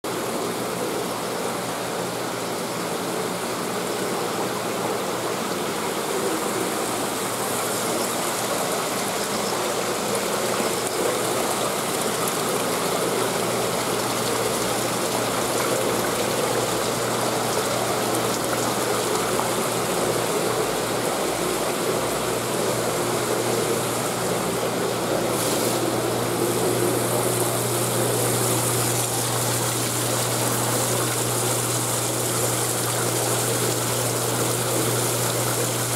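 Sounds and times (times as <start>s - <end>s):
water splashing into tank: 7.2s - 22.0s, 25.3s - 35.9s.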